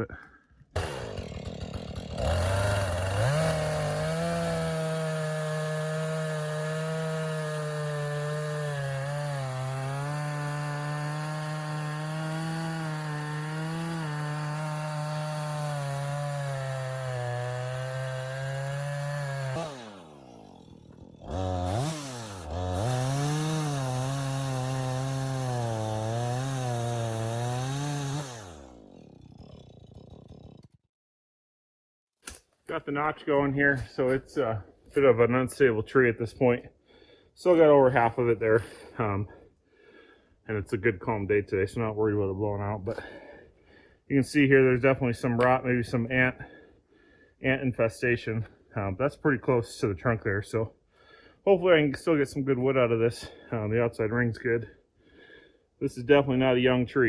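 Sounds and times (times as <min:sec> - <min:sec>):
chainsaw cutting wood: 0:00.7 - 0:30.8.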